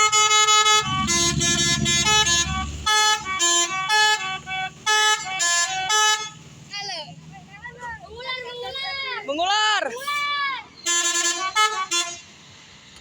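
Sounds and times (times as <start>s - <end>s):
musical bus air horn melody: 0.0s - 6.4s, 10.9s - 12.3s
bus engine rumble: 0.0s - 13.0s.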